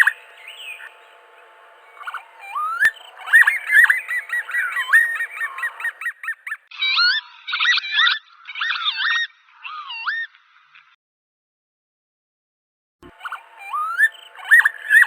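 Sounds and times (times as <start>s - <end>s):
faint steady hiss: 0.0s - 6.1s, 13.0s - 15.0s
lapwings calling: 0.0s - 6.6s, 13.0s - 15.0s.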